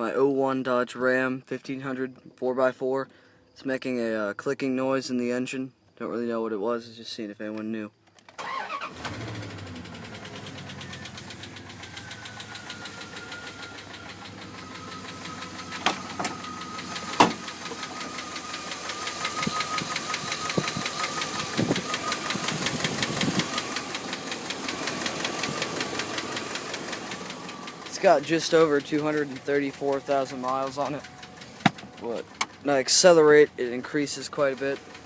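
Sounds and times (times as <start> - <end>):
rapid regular engine clicking: 8.2 - 35.0
truck engine running: 8.8 - 35.0
engine knocks: 9.4 - 35.0.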